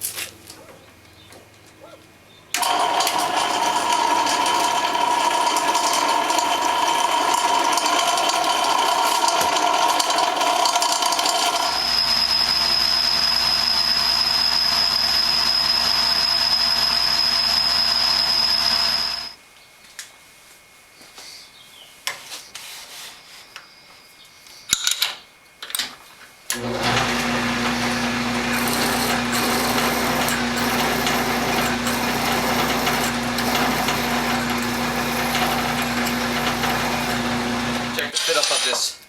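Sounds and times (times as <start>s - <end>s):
machine tool squealing cut: 2.6s - 19.4s, 26.6s - 38.4s
machining noise with high whine: 8.2s - 19.4s, 26.6s - 38.1s.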